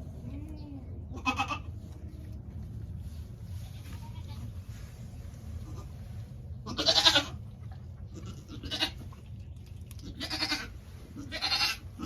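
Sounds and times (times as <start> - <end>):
low steady hum: 0.0 - 12.0
goat bleating: 0.3 - 1.8, 3.6 - 4.7, 6.6 - 7.4, 8.2 - 9.0, 10.0 - 12.0.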